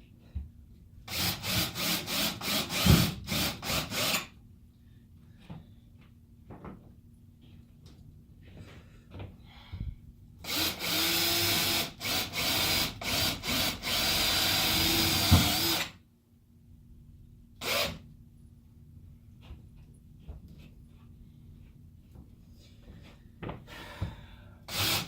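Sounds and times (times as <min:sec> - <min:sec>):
power drill driving screws: 0:01.1 - 0:04.3, 0:10.5 - 0:16.0, 0:17.6 - 0:18.0, 0:24.7 - 0:25.0.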